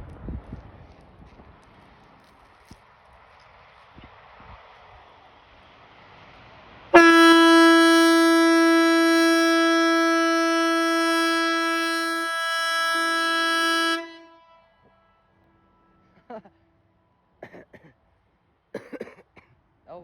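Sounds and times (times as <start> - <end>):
warning siren blast: 7.0 - 14.4.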